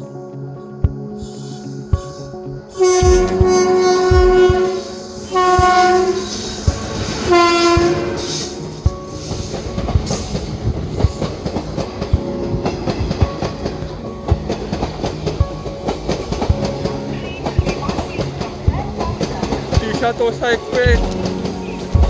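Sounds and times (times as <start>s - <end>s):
locomotive horn blasts: 2.8s - 6.5s
train wheels clattering over joints: 2.8s - 8.0s.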